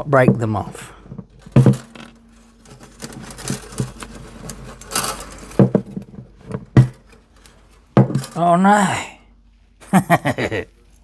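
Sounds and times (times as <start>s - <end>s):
clicks and scrapes of guitar pins: 1.0s - 8.4s.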